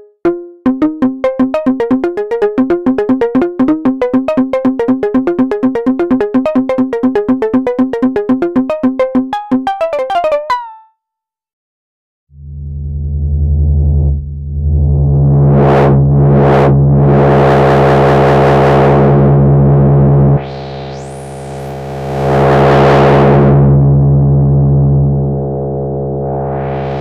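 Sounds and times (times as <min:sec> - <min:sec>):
synthesizer note with filter sweeps: 0:00.0 - 0:10.9.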